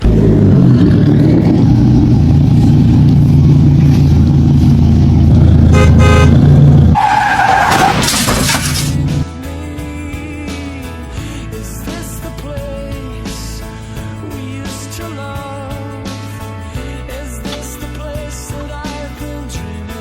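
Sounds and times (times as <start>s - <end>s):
vehicle engine running loudly: 0.0s - 7.0s
horn toot: 5.6s - 8.9s
high screech: 7.0s - 9.0s.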